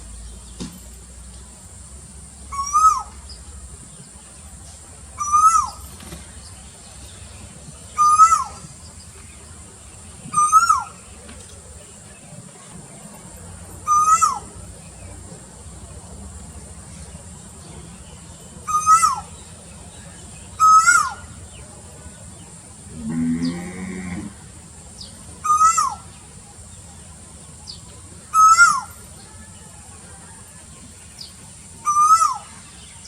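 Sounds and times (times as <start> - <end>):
koel calling: 2.5 - 3.2, 5.2 - 5.8, 8.0 - 8.6, 13.8 - 14.5, 18.6 - 19.4, 20.6 - 21.4, 25.4 - 26.2, 28.3 - 29.0, 31.8 - 32.6
low drawn-out animal call: 22.8 - 24.6.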